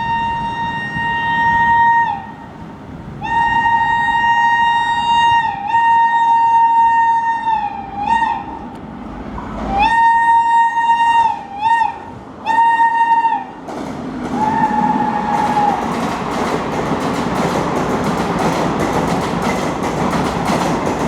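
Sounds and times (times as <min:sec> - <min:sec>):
locomotive horn blasts: 0:00.0 - 0:02.5, 0:03.2 - 0:08.6, 0:09.7 - 0:13.6
train rumble and wheel clatter: 0:00.0 - 0:21.0.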